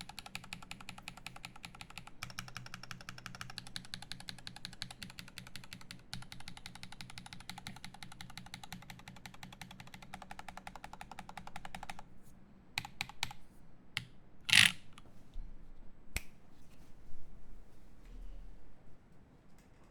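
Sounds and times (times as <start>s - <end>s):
mechanical keyboard typing: 0.0s - 12.0s, 14.5s - 14.8s.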